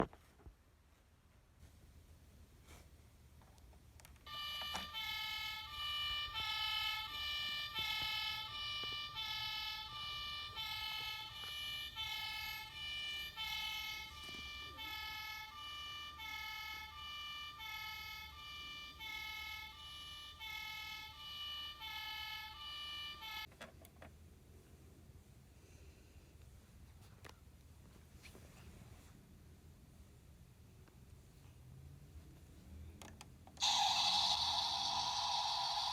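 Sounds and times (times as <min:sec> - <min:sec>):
toy electronic two-tone siren: 0:04.3 - 0:23.5, 0:33.6 - 0:35.9.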